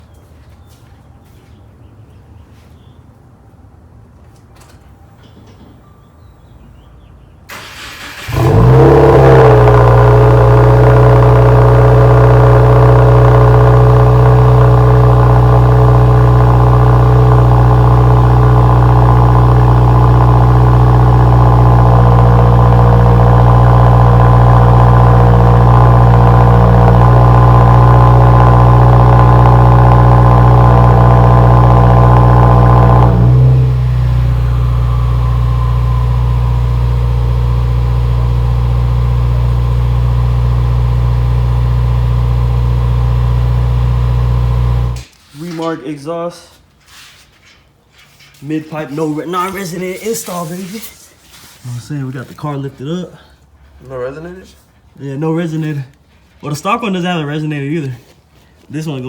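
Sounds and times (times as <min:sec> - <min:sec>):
car engine starting and idling: 0:07.4 - 0:45.1.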